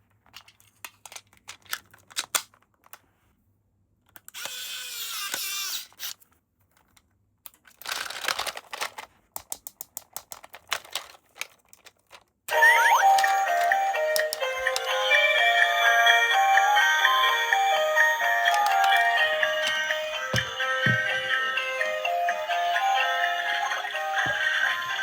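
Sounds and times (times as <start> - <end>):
packaging clicks and rustles: 6.8 - 12.3
electronic toy tune: 12.5 - 25.0.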